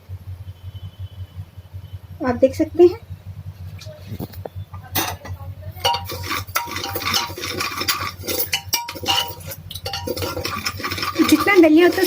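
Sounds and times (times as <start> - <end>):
spoon scraping a pot: 5.8 - 12.0.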